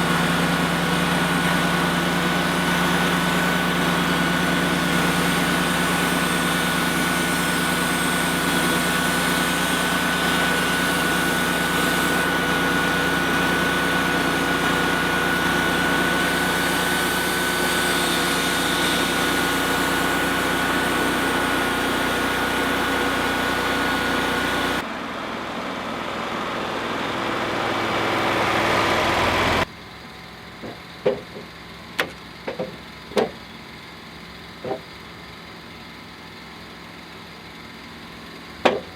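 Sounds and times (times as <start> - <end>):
band sawmill whining: 0.0 - 36.2, 38.2 - 38.9
sharp knocks: 30.6 - 33.4, 34.6 - 34.8, 38.6 - 38.9.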